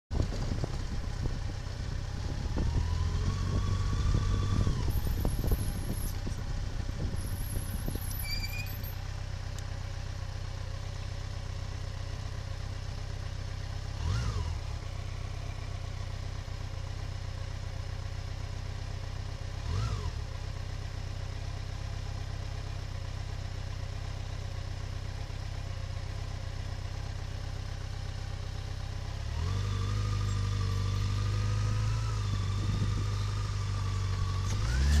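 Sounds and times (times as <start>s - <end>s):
vehicle engine humming: 0.1s - 35.0s.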